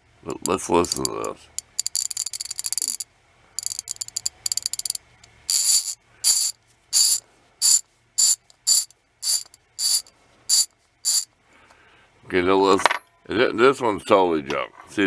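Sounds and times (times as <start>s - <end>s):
ratchet screwdriver clicking: 0.9s - 3.0s, 3.6s - 11.3s.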